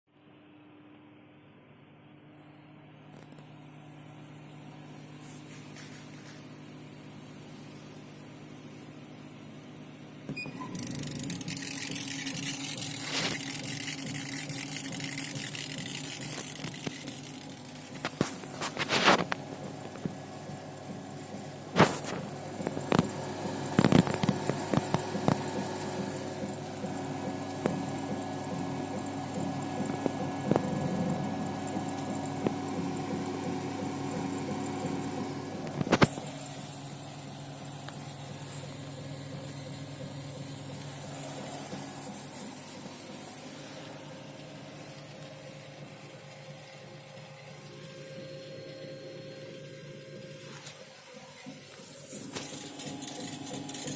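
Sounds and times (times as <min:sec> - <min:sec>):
laser cutter humming: 0:10.2 - 0:53.9
rhythmic ticking: 0:10.9 - 0:17.8.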